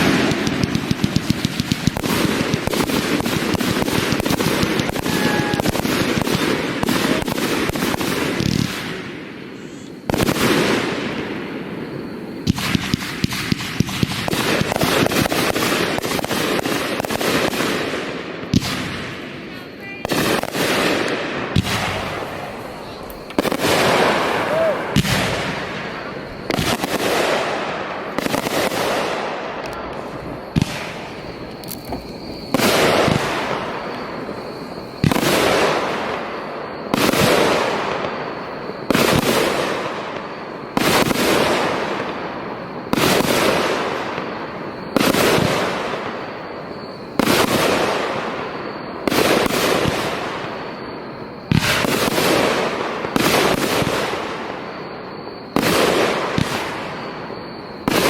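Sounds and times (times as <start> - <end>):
firework shells bursting: 0.0 - 9.0, 20.1 - 36.3
crackling after bangs: 0.0 - 58.0.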